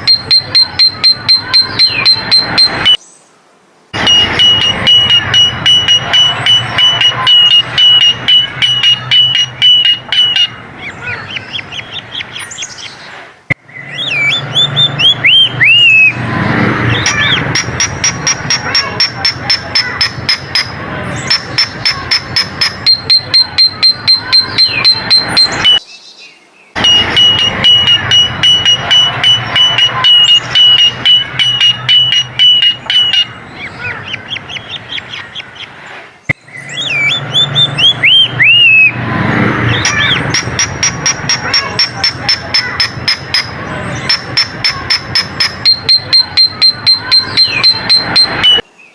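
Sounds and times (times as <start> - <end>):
bird whistled notes: 0.0 - 3.0, 4.0 - 10.6, 13.8 - 16.2, 16.9 - 25.8, 26.8 - 34.8, 36.6 - 39.0, 41.7 - 48.7
bird clicking notes: 26.8 - 33.3, 39.8 - 48.6.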